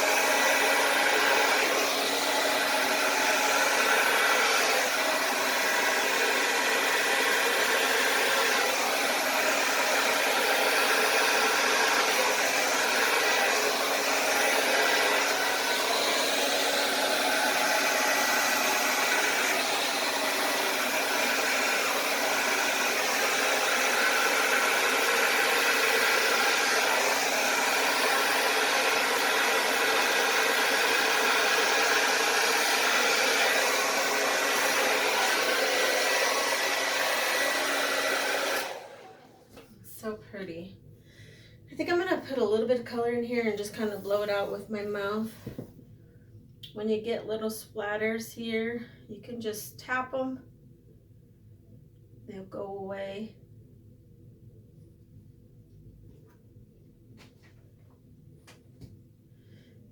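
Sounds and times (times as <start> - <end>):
hair dryer blowing: 0.0 - 40.2, 41.8 - 45.8.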